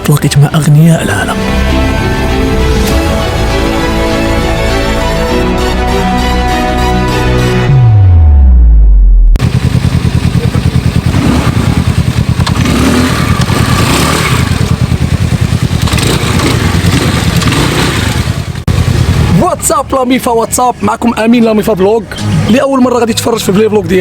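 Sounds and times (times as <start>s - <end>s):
music track winding down: 1.0s - 9.9s
motor engine running: 7.7s - 20.1s.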